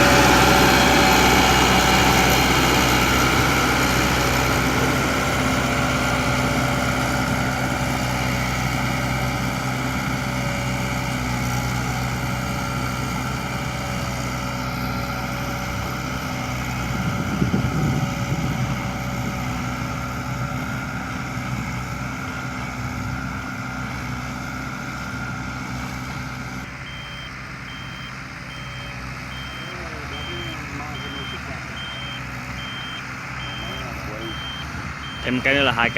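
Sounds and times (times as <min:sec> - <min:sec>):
heavy vehicle engine running: 0:00.0 - 0:35.9
reversing alarm beeping: 0:26.8 - 0:35.9.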